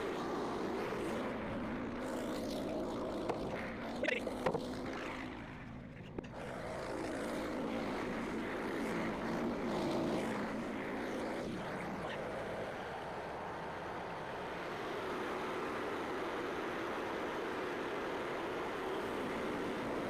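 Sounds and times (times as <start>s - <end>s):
small gas engine running: 0.0s - 20.0s.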